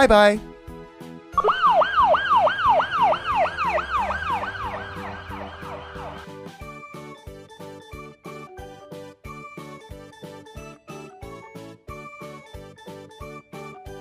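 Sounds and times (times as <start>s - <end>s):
siren-style yelping effect: 1.4s - 6.3s.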